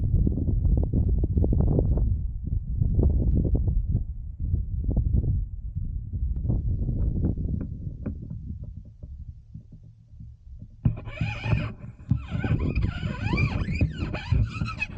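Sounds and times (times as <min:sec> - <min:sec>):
wind buffeting microphone: 0:00.0 - 0:09.8, 0:10.6 - 0:14.9.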